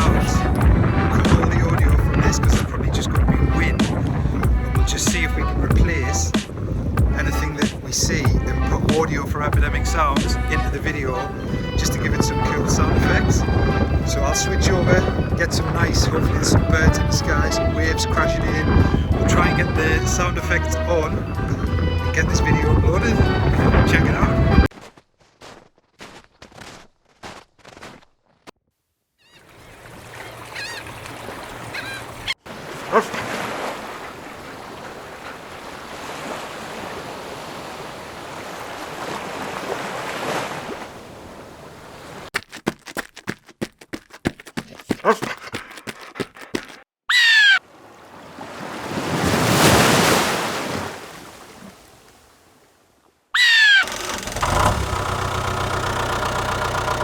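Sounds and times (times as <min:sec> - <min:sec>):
wave breaking: 0:00.0 - 0:17.7, 0:48.3 - 0:52.0
surf washing: 0:00.0 - 0:24.6, 0:29.4 - 0:42.3, 0:47.6 - 0:52.4
bird calls: 0:29.2 - 0:35.5, 0:47.1 - 0:47.6, 0:53.4 - 0:54.0
loud falling bird cry: 0:53.4 - 0:54.0
mechanical drone: 0:53.8 - 0:57.0
sharp clicks: 0:53.8 - 0:57.0.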